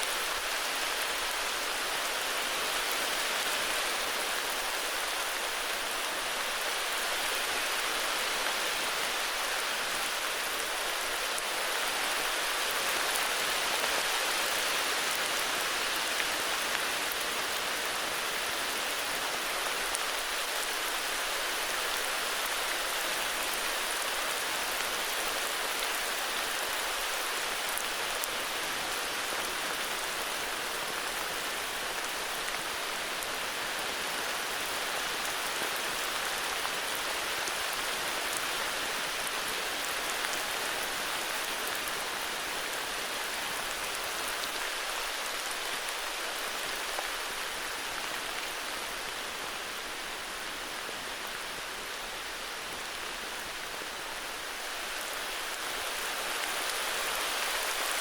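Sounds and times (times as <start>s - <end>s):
heavy rain falling: 0.0s - 58.0s.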